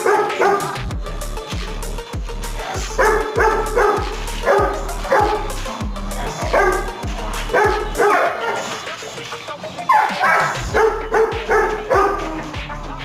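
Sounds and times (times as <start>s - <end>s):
dog barking: 0.0s - 0.8s, 3.0s - 5.6s, 6.5s - 8.8s, 9.9s - 12.4s.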